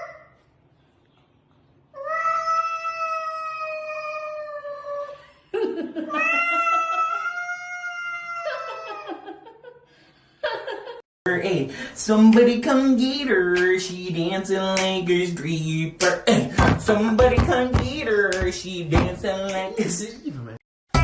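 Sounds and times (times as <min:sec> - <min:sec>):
cat yowling: 0:02.0 - 0:05.1, 0:06.1 - 0:09.2.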